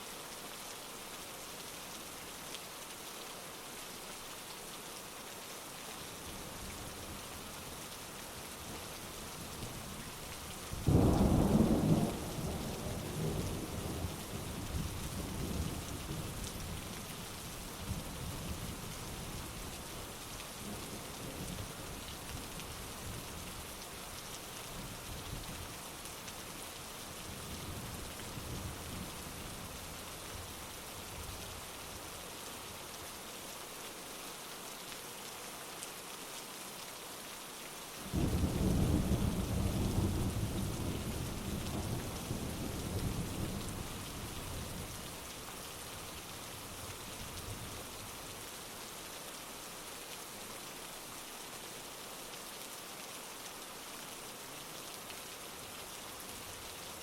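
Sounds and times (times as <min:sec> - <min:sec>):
heavy rain: 0:00.0 - 0:57.0.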